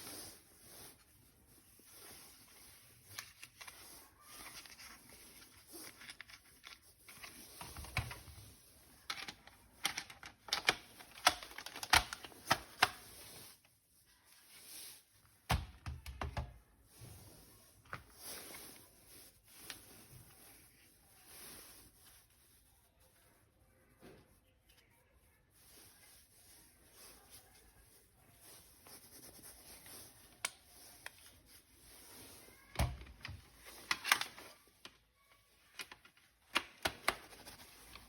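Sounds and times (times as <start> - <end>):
plastic toy parts clicking: 9.0 - 13.1, 32.8 - 35.0.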